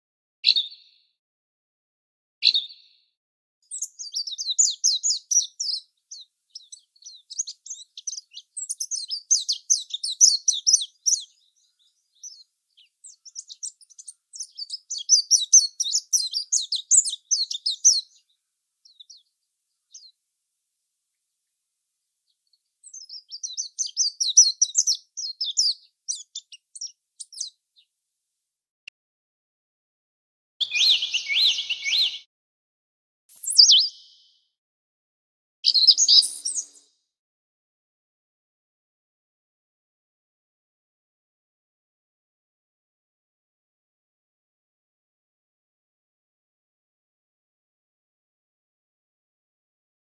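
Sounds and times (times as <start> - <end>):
small bird chirping rapidly: 3.7 - 19.3, 19.9 - 20.1, 22.8 - 27.6, 30.6 - 32.3, 33.3 - 34.4, 35.6 - 36.9.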